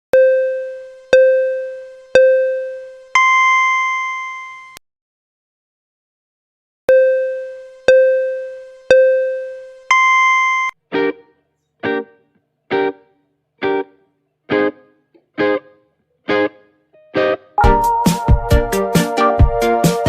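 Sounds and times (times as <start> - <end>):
electronic countdown beeps: 0.2 - 4.7, 6.9 - 10.8, 17.6 - 19.2.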